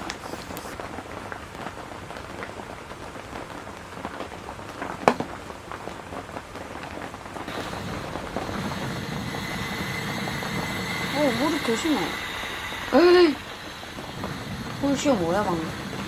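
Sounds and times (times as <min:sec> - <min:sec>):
heavy rain pattering: 0:00.0 - 0:16.0.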